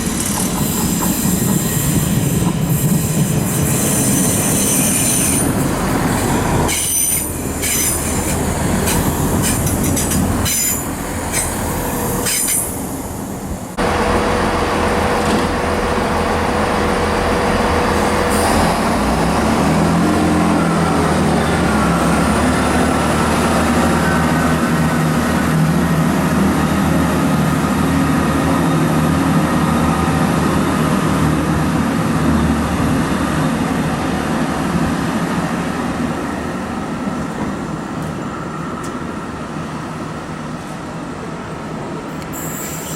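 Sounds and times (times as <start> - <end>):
train clattering over rail joints: 0.0 - 12.9
train wheels squealing: 0.0 - 12.9, 42.3 - 42.9
train running rumble with whine: 0.0 - 42.9.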